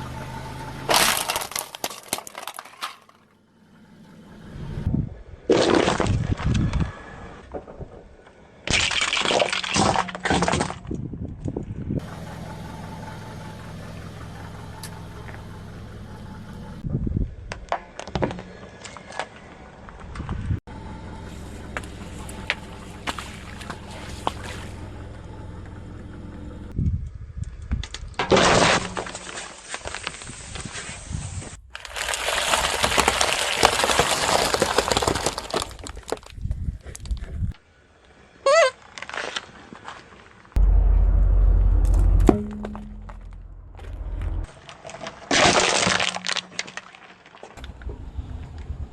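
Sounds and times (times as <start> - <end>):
car engine idling: 0.0 - 1.5, 3.2 - 4.9, 11.7 - 16.8, 20.7 - 26.8, 40.6 - 44.6
car tyre crushing something brittle: 0.9 - 3.3, 5.5 - 7.0, 8.6 - 11.1, 27.8 - 37.5, 38.8 - 40.3, 41.8 - 47.9
low rumble: 3.5 - 5.5, 40.6 - 44.6.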